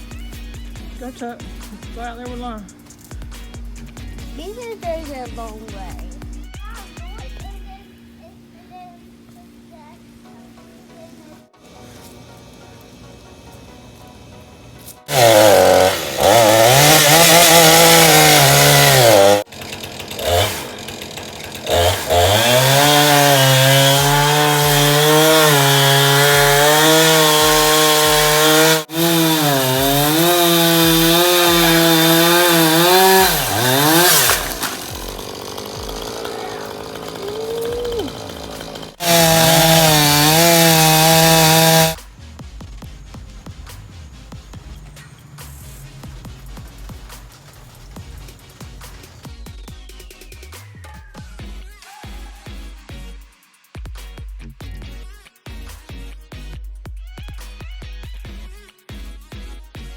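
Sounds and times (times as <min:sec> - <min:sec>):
chainsaw cutting wood: 0:00.0 - 0:07.6, 0:11.6 - 0:42.1, 0:43.2 - 0:50.5.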